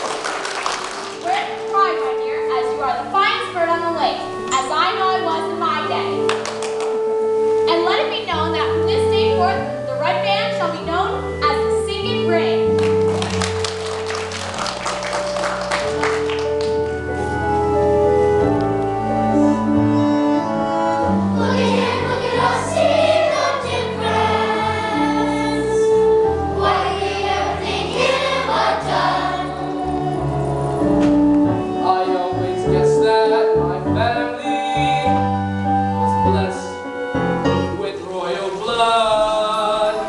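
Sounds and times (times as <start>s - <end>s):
choir singing: 21.2s - 30.6s.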